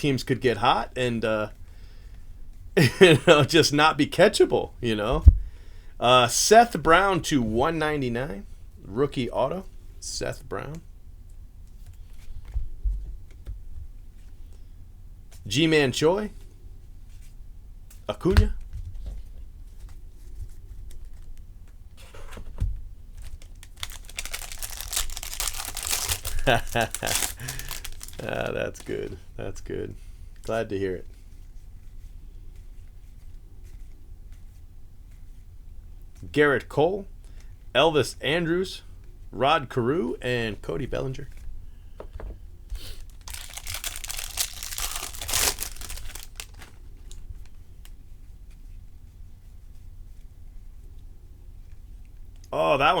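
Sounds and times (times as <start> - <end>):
wrapper crinkling torn open: 23.1 - 29.2, 42.9 - 47.5.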